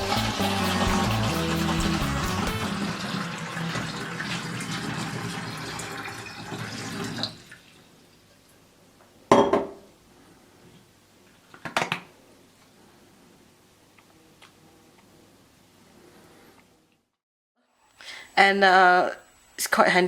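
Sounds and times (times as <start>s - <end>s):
water pouring through a funnel: 0.0s - 7.9s.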